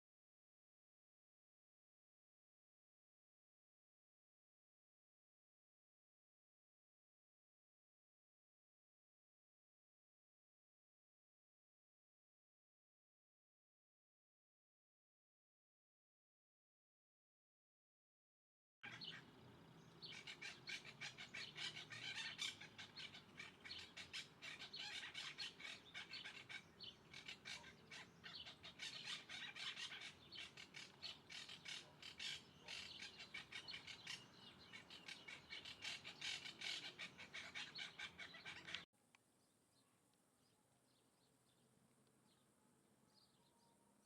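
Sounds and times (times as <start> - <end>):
birds chirping and chattering: 18.8 - 38.8.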